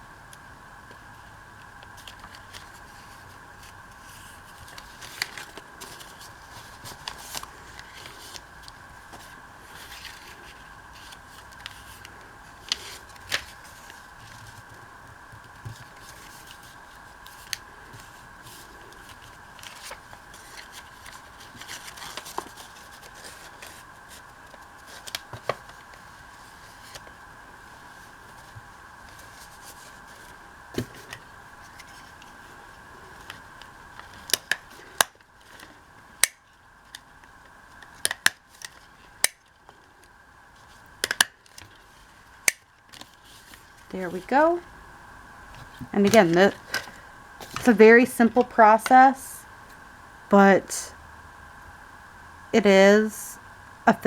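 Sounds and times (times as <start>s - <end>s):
faint steady whine: 0.0s - 54.0s
paper rustling and scraping: 1.9s - 35.8s, 40.6s - 43.9s, 45.5s - 48.6s.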